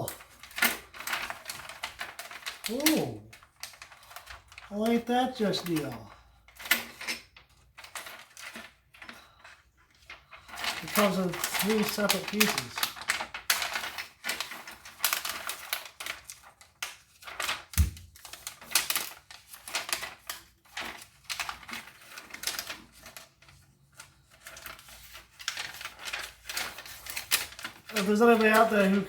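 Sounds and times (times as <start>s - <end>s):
keyboard parts clattering: 10.4s - 13.0s, 25.9s - 29.0s.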